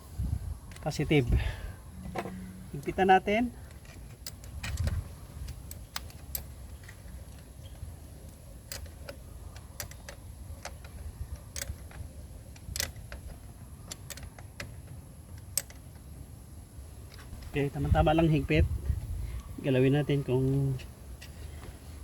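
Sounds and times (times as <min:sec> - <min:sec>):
spanner clicking on battery terminal: 0:03.7 - 0:07.8, 0:08.6 - 0:14.8.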